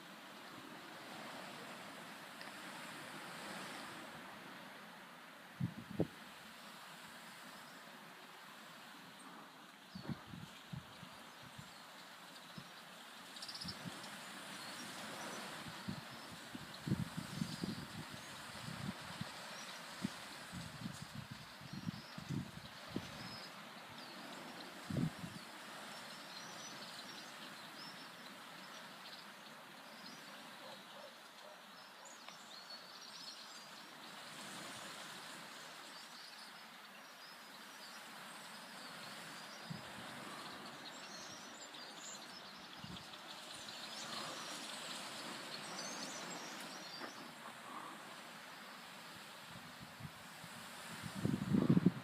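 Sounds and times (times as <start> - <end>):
outdoor background noise: 0.0 - 52.0
faint bird chirps: 11.4 - 18.6.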